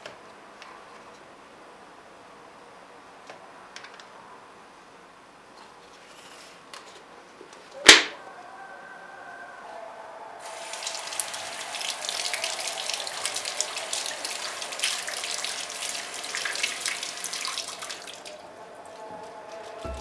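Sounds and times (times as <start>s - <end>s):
tap water splashing into sink: 10.4s - 18.3s.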